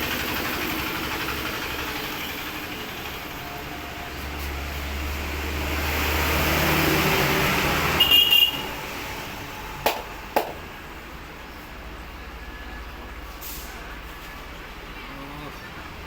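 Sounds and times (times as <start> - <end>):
vehicle passing by: 0.0 - 8.0
sharp cracks: 9.8 - 10.6.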